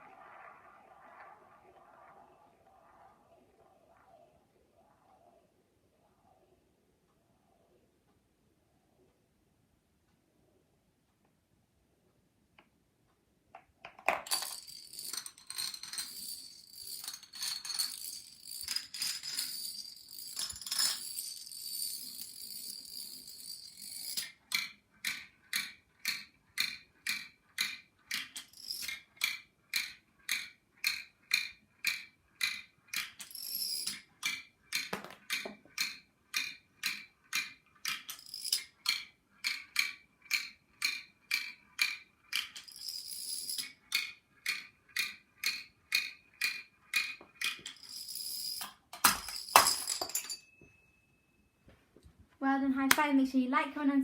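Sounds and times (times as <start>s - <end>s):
dominoes toppling and clattering: 14.0s - 24.7s, 28.1s - 29.4s, 33.0s - 40.5s, 41.8s - 44.7s, 47.0s - 50.4s.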